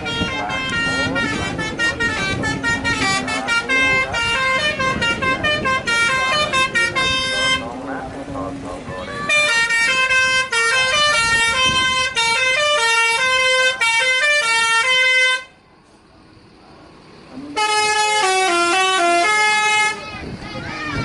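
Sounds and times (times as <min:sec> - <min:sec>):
musical air horn tune: 0:00.0 - 0:07.7, 0:09.2 - 0:15.5, 0:17.5 - 0:20.0.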